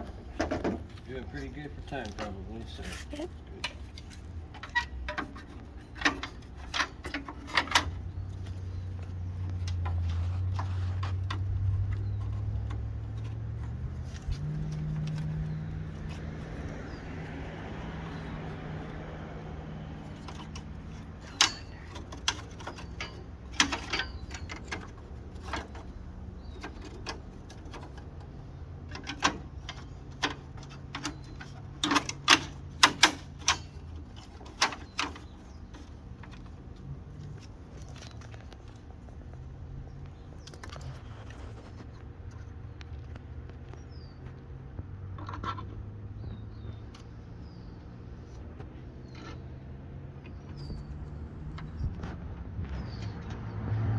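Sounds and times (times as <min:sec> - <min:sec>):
hand tools clicking and knocking: 0:00.0 - 0:38.9.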